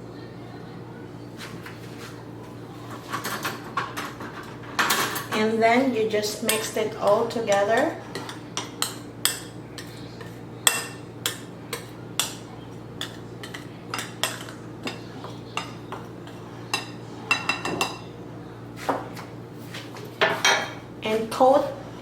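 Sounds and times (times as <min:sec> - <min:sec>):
utensil tapping mixing bowl: 0:06.4 - 0:12.4.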